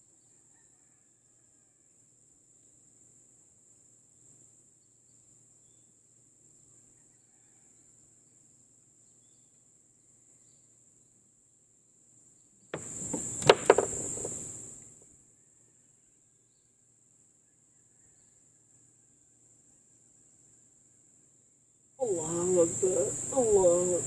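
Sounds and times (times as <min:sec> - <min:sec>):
sharp knocks: 0:12.8 - 0:14.5
crickets and insects chirping: 0:12.8 - 0:14.8, 0:22.0 - 0:24.0.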